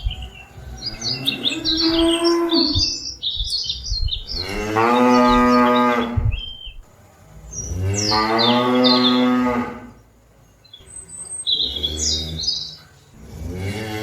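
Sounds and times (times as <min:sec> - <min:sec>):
cattle mooing: 0:00.0 - 0:03.1, 0:04.3 - 0:06.2.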